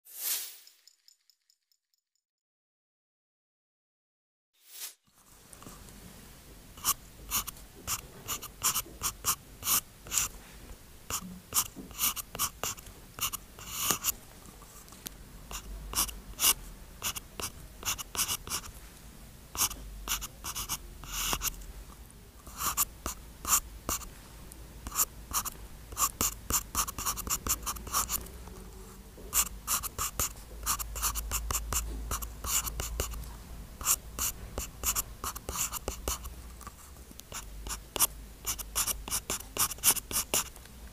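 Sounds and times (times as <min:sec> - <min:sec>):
stylus scratching on screen: 0:37.3 - 0:40.6.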